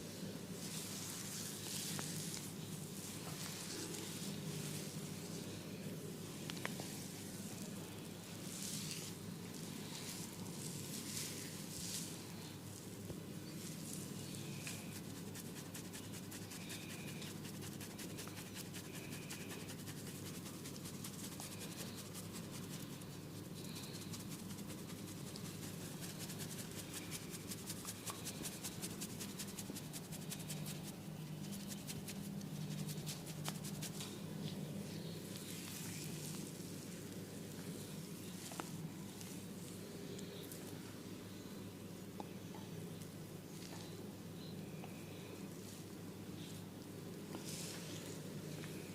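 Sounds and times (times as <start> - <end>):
low steady hum: 0.0 - 48.9
hands rubbing scalp and hair: 0.6 - 5.3, 14.7 - 34.1.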